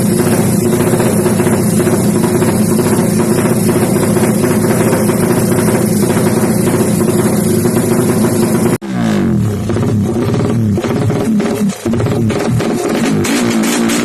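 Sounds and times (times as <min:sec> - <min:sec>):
motorcycle engine running steadily: 0:00.0 - 0:14.0.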